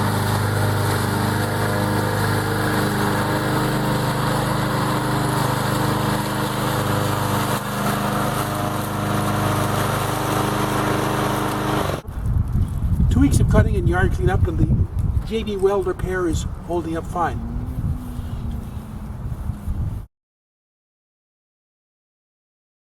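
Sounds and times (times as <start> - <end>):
lawn mower engine running: 0.0 - 12.2.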